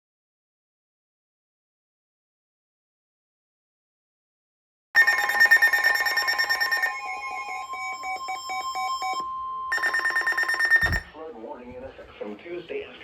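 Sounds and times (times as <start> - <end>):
rapidly pulsing electronic beeping: 5.0 - 11.1
steady alarm tone: 5.0 - 11.1.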